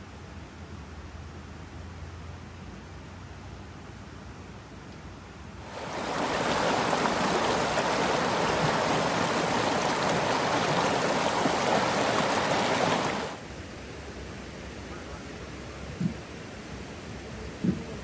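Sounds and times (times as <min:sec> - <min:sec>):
water rushing over rocks: 0:05.6 - 0:13.4.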